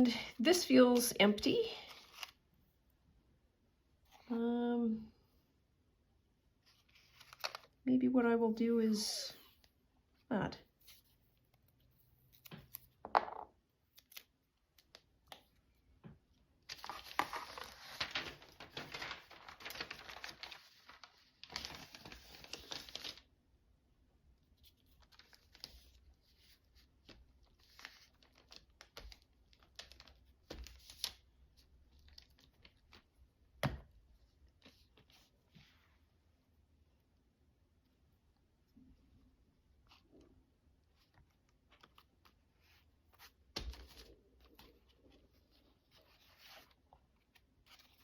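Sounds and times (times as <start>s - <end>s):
paper rustling: 1.7s - 2.4s, 6.6s - 7.8s, 16.6s - 23.3s, 24.6s - 31.3s, 40.8s - 48.0s
paper tearing and crinkling: 16.7s - 23.2s.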